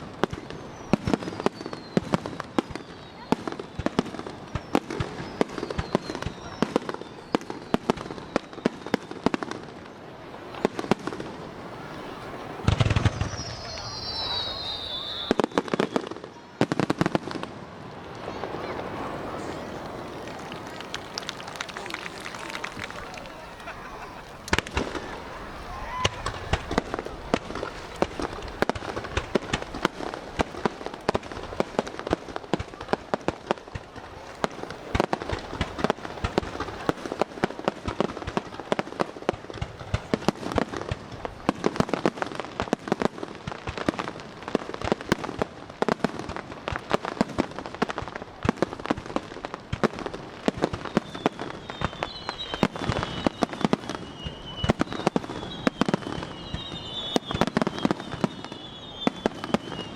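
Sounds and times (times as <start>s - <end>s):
fireworks bangs and crackling: 0.0s - 59.9s
firework whistles: 0.2s - 9.7s, 10.3s - 17.2s, 18.1s - 33.2s, 50.4s - 59.9s.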